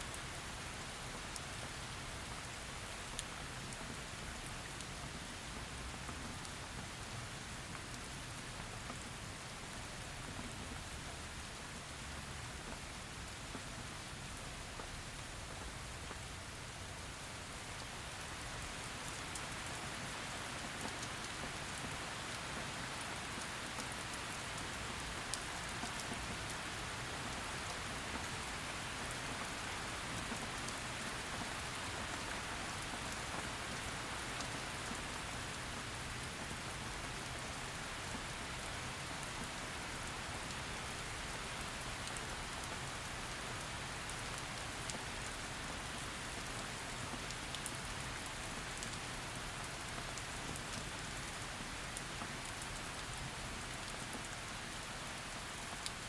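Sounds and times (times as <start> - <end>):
heavy rain falling: 0.1 - 56.0.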